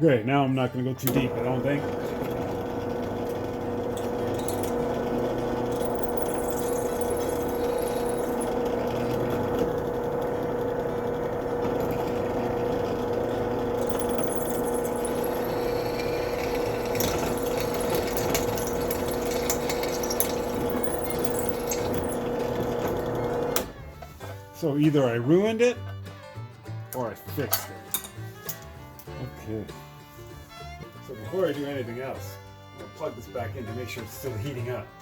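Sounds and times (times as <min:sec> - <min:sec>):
electric drill whining: 0:01.1 - 0:23.9
drill bit scraping metal: 0:01.3 - 0:23.7.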